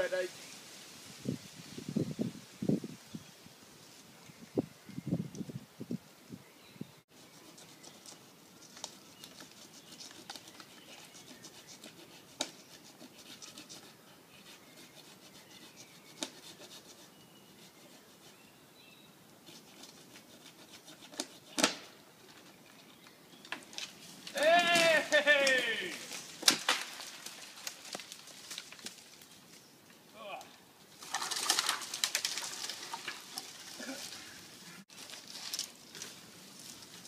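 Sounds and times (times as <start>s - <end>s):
faint rustling in branches: 7.1s - 18.5s, 19.5s - 37.0s.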